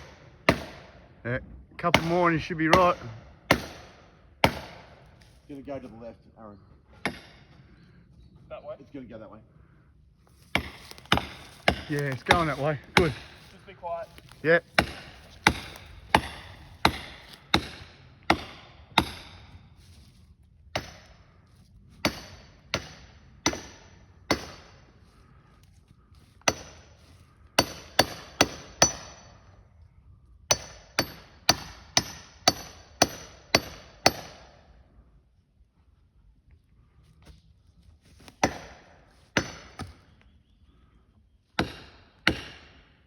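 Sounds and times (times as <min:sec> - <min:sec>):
axe chopping into tree: 0:00.5 - 0:00.9, 0:02.8 - 0:05.0, 0:10.5 - 0:13.5, 0:14.2 - 0:19.5, 0:20.8 - 0:21.1, 0:22.0 - 0:24.7, 0:26.5 - 0:26.8, 0:38.2 - 0:40.1, 0:41.6 - 0:42.8.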